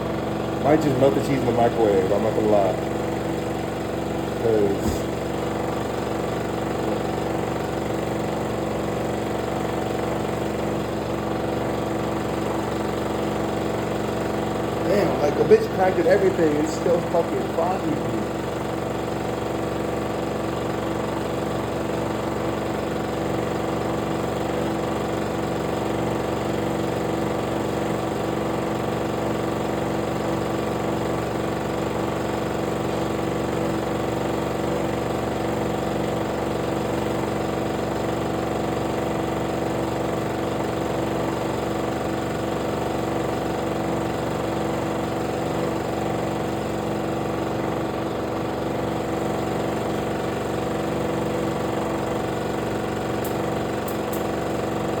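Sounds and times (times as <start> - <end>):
motor humming: 0.0 - 6.1.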